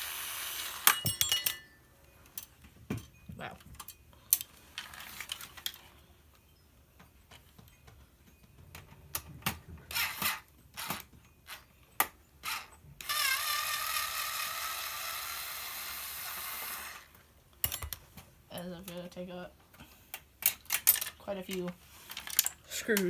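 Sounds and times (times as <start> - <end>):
small electric motor whirring: 0.0 - 1.0, 9.9 - 11.0, 12.4 - 17.1
metal parts clicking and knocking: 17.6 - 19.0, 20.1 - 23.0.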